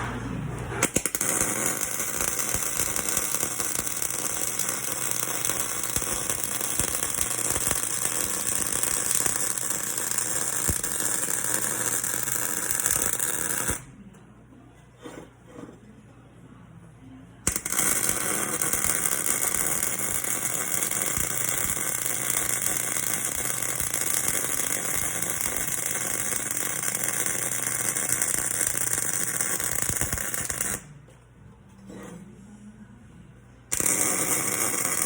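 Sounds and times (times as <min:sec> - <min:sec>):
arc welding hissing crackle: 0:00.8 - 0:13.8, 0:17.5 - 0:30.8, 0:33.7 - 0:35.0.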